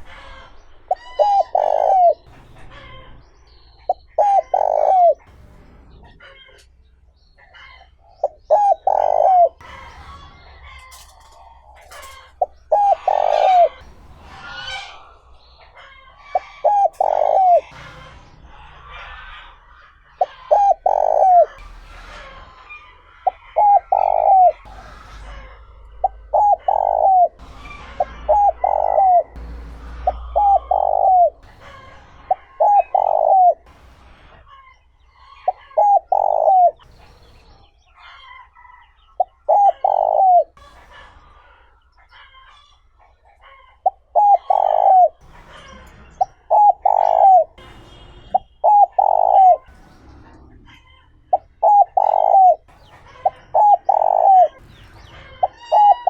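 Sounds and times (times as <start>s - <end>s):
dove cooing: 0.0s - 3.0s, 3.8s - 5.3s, 7.6s - 17.9s, 18.5s - 21.7s, 22.7s - 33.7s, 35.2s - 37.0s, 37.9s - 42.7s, 43.4s - 47.6s, 48.3s - 49.8s, 50.4s - 56.0s
small birds chirping: 0.0s - 56.0s.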